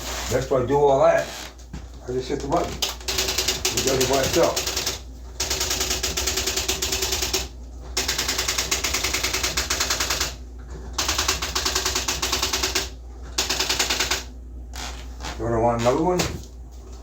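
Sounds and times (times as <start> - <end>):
electronic typewriter rattling: 2.2 - 10.4, 11.0 - 16.3.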